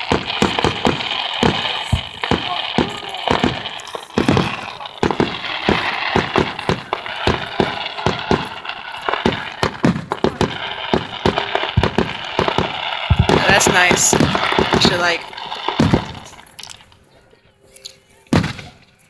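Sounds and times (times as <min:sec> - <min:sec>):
fireworks bangs and crackles: 0:00.0 - 0:17.2, 0:18.2 - 0:19.0.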